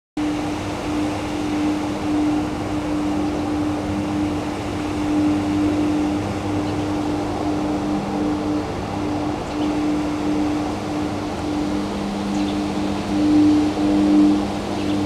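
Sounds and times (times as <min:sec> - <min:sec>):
droning hum: 0:00.2 - 0:15.0.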